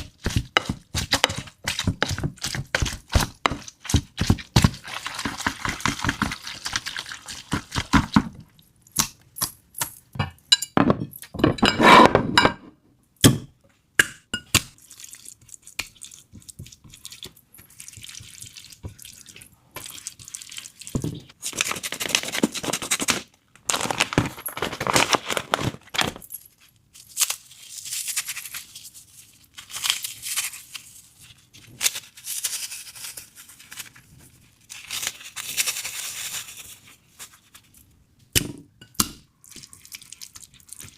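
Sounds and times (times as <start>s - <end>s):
dishes and glassware clinking: 10.2s - 12.8s.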